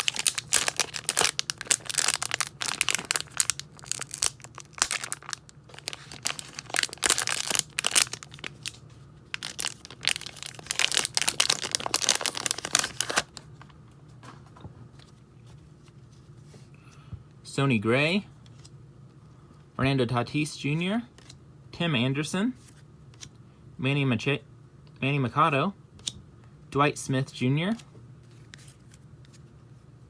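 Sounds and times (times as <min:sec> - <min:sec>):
plastic wrapper crinkling and tearing: 0:00.0 - 0:13.5.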